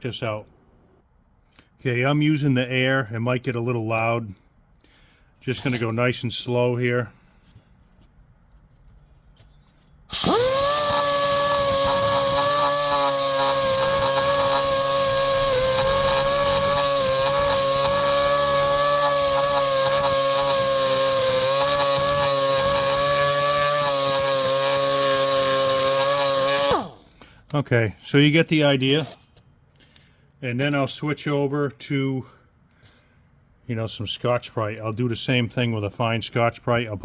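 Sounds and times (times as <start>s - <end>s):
air die grinder whining: 10.1s - 27.1s
air hissing: 10.1s - 27.1s.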